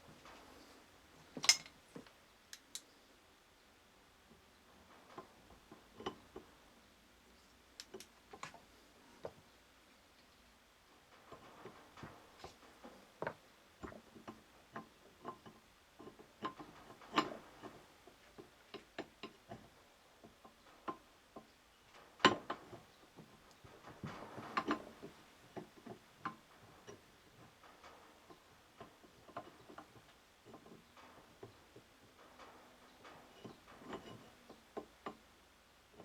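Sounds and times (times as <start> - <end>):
small metal parts clicking: 1.4 - 1.8.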